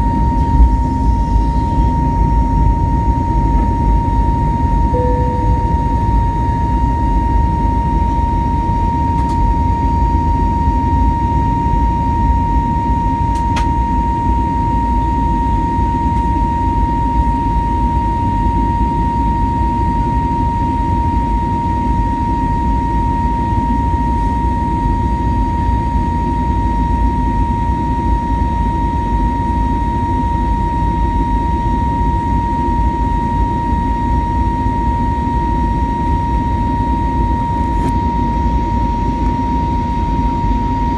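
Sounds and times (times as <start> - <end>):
high whine: 0.0 - 21.4
jet engine low rumble: 0.0 - 40.9.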